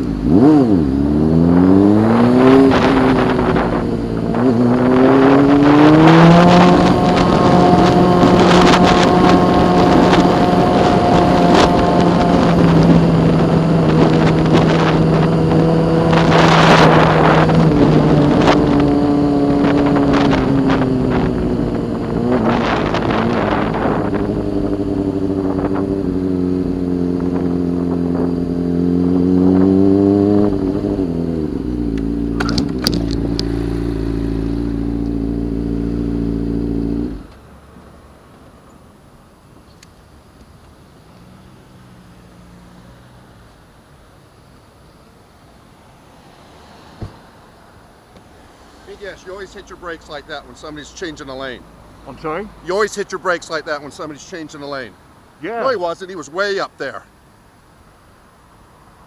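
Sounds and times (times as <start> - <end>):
motorcycle engine accelerating: 0.0 - 37.4
rushing wind: 0.0 - 40.4.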